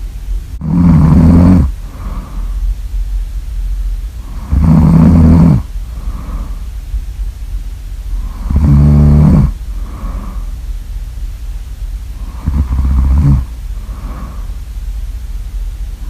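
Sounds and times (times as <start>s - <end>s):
deep snores: 0.6s - 2.6s, 4.2s - 6.7s, 8.1s - 10.6s, 12.2s - 14.6s
breathy out-breath: 1.8s - 2.7s, 5.9s - 6.7s, 9.7s - 10.6s, 13.8s - 14.6s.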